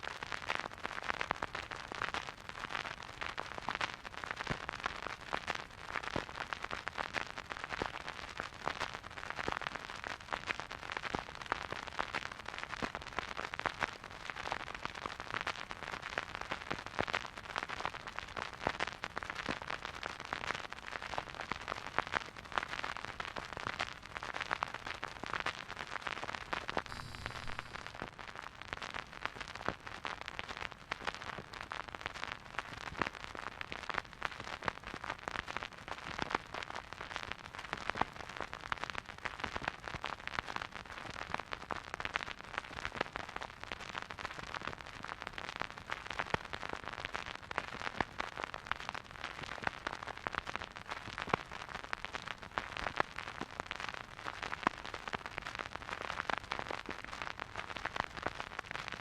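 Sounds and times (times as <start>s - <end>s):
vinyl record hiss and crackle: 0.0s - 59.0s
vinyl pops: 26.9s - 28.2s.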